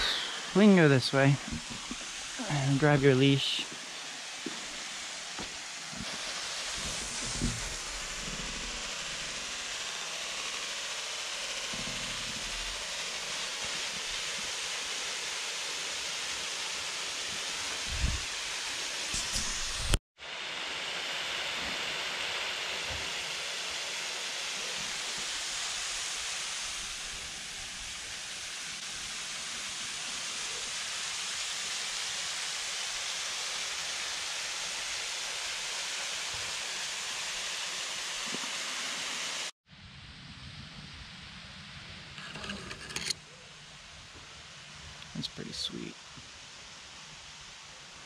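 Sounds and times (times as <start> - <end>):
waterfall rushing: 0.0 - 19.2.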